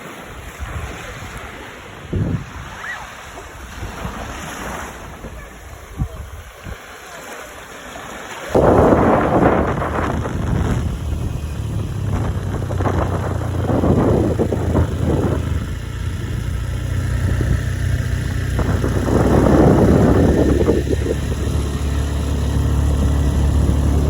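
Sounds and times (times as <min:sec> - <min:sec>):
loud rushes of noise: 0:08.5 - 0:24.0
small engine running steadily: 0:08.5 - 0:24.0.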